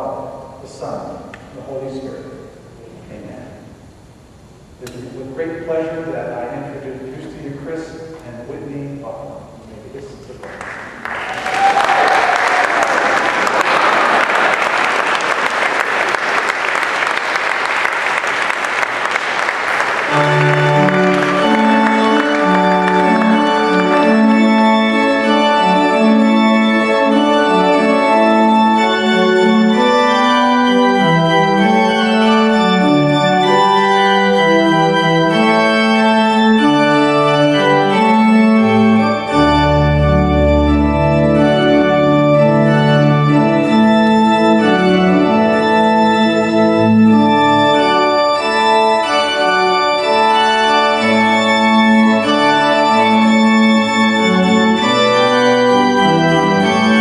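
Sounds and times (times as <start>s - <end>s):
organ playing sustained chords: 0.0s - 57.0s
deep organ bass pedal notes: 4.6s - 10.7s, 18.2s - 57.0s.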